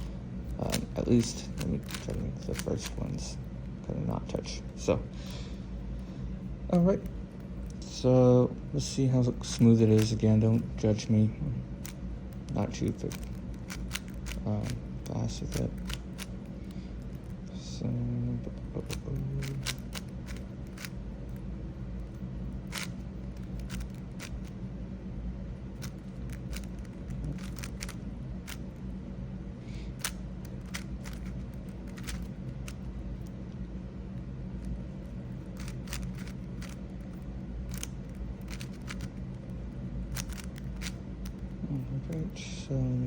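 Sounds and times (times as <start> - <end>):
low background hum: 0.0 - 43.0
puzzle cube clicking: 0.6 - 3.0, 9.5 - 10.7, 11.8 - 16.3, 18.8 - 20.9, 22.7 - 24.5, 25.8 - 28.6, 30.0 - 32.8, 35.6 - 39.2, 40.1 - 41.4.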